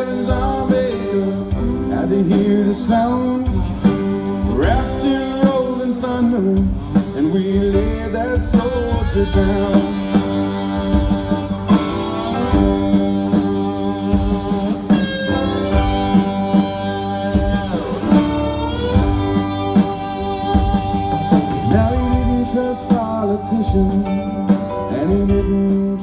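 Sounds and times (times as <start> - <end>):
band playing steady beat: 0.0 - 26.0
electric guitar lines: 0.0 - 26.0.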